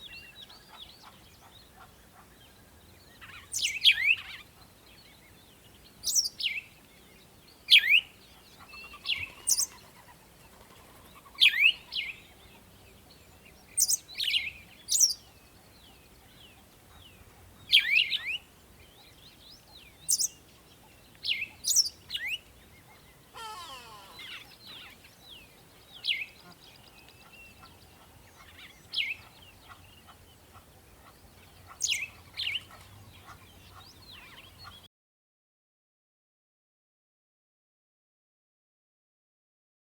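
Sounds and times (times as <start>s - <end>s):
birds chirping: 0.0s - 34.9s
lower sweeping call: 23.4s - 24.6s.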